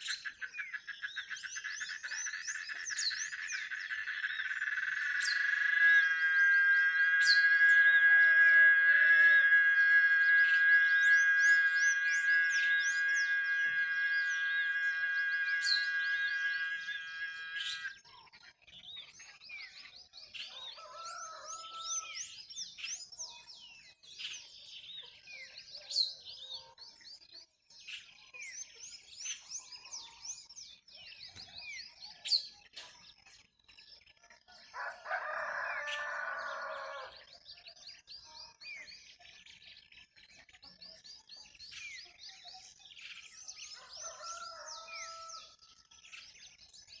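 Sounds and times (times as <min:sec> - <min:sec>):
small birds chirping: 0:00.0 - 0:17.9
rooster crowing: 0:04.3 - 0:17.9, 0:20.7 - 0:22.1, 0:34.8 - 0:37.2, 0:43.8 - 0:45.6.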